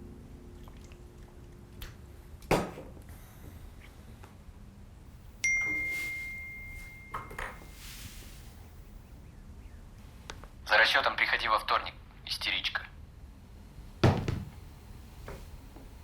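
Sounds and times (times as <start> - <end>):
metallic ding: 5.4 - 7.7
knock: 14.0 - 14.6.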